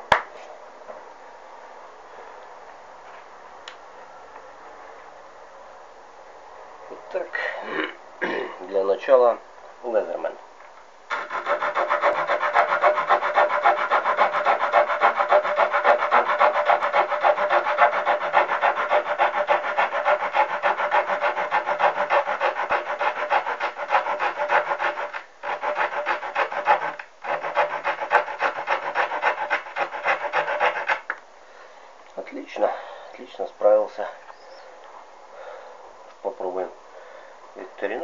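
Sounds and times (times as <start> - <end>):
small saw cutting: 11.1 - 31.2.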